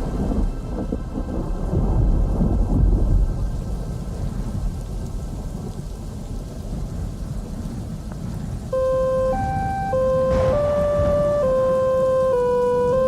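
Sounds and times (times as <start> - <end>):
low rolling thunder: 0.0 - 13.0
rain: 0.0 - 13.0
synth lead melody: 8.8 - 13.0.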